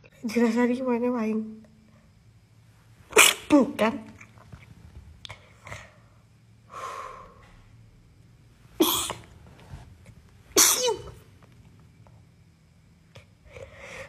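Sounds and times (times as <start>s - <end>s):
person sneezing: 3.1s - 3.6s, 8.8s - 9.3s, 10.5s - 11.2s
soft breathy intake: 5.3s - 7.8s.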